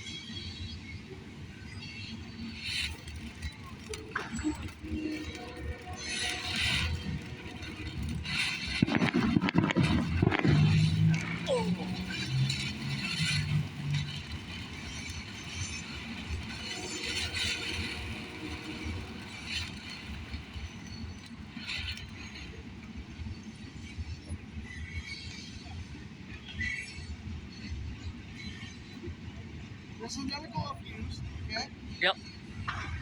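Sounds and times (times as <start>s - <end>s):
firework fountain hissing: 0.1s - 24.1s
firework crackles: 1.4s - 24.1s.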